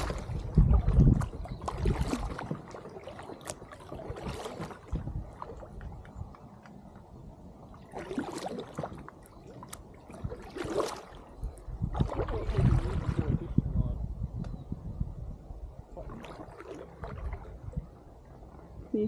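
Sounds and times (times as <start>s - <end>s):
paddle splashing in water: 0.0s - 6.8s, 7.6s - 13.5s, 15.9s - 18.0s.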